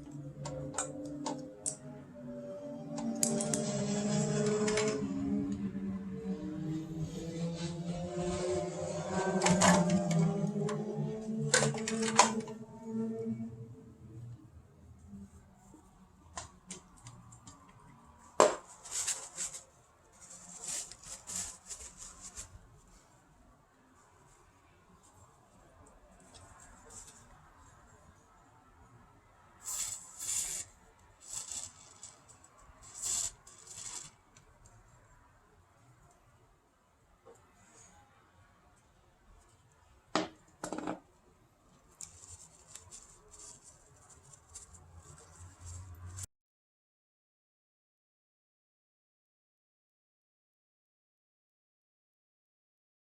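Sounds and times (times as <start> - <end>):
scratchy rubbing and scraping: 18.4 - 23.0, 29.6 - 34.3, 41.9 - 46.3
rustling: 18.5 - 23.2, 29.6 - 34.3, 41.7 - 46.2.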